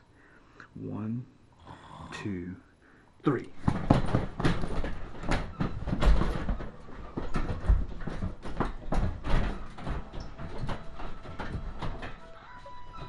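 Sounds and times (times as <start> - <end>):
knocks and thumps: 3.6 - 13.0.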